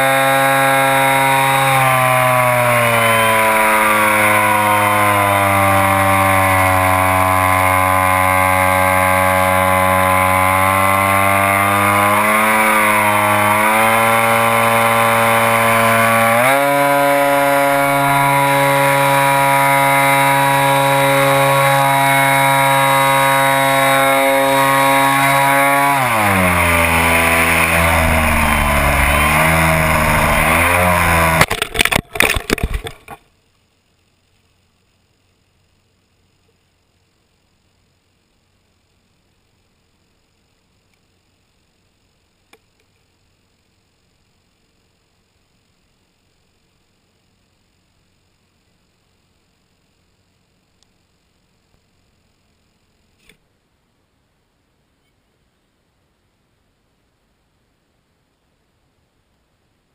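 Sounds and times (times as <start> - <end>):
model airplane motor buzzing: 0.0 - 33.2.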